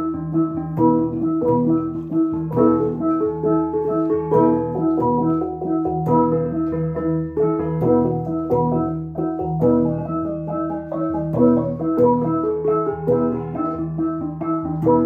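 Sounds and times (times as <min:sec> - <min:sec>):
tuned gongs struck in rhythm: 0:00.2 - 0:15.0.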